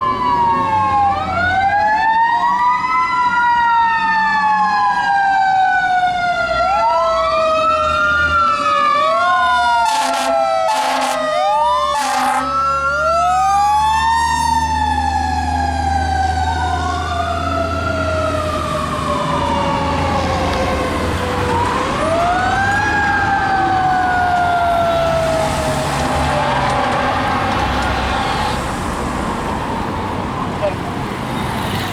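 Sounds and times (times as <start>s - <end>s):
fire engine siren wailing: 0.0s - 31.8s
short siren blasts: 6.6s - 28.7s.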